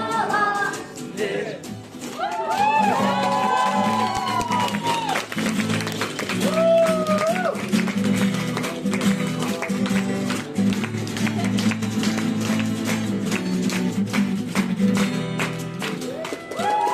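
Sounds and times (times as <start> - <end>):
band music with strummed guitar: 0.0 - 16.9.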